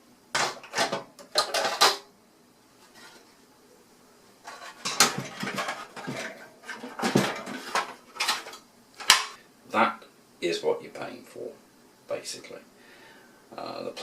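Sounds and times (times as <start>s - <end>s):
plastic covers clicking and clattering: 0.4s - 2.1s, 4.4s - 9.4s.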